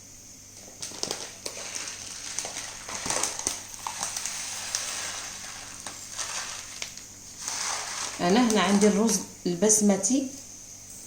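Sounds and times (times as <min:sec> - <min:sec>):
dry rice pouring into a bowl: 0:00.6 - 0:09.3.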